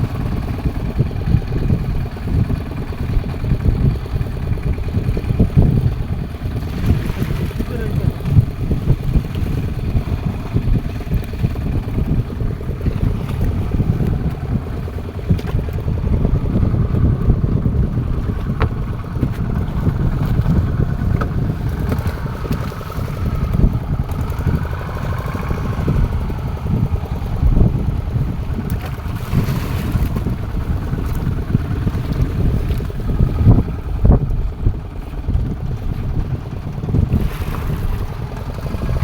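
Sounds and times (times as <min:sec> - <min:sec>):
boat engine running: 0:00.0 - 0:39.0
wind buffeting microphone: 0:00.0 - 0:39.0.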